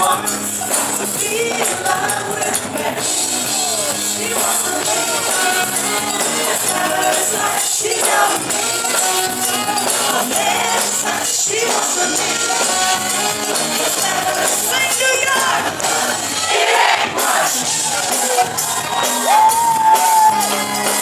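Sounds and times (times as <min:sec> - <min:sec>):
live band music: 0:00.0 - 0:21.0.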